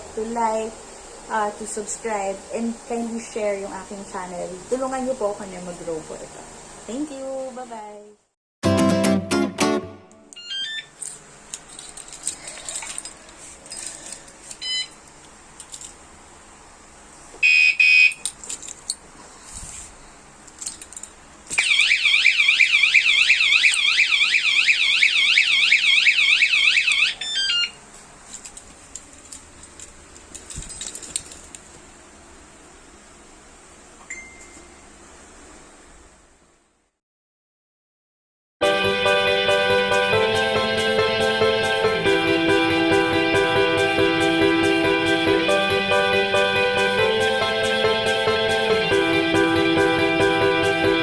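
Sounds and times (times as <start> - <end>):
alarm beep burst: 17.4 - 18.1
fast-warbling alarm siren: 21.6 - 27.8.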